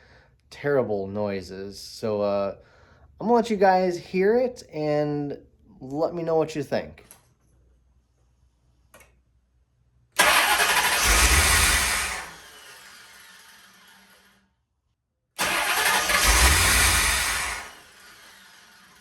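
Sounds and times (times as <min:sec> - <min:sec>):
car starter cranking engine: 0:10.2 - 0:14.3, 0:15.4 - 0:19.0.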